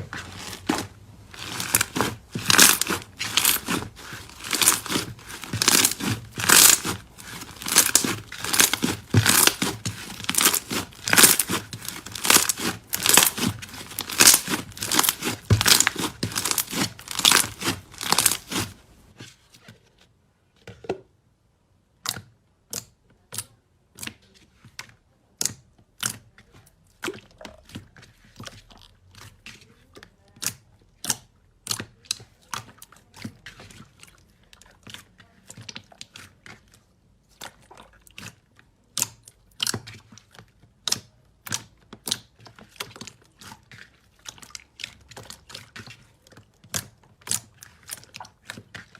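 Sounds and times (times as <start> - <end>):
slime crackling and popping: 0.0 - 19.0.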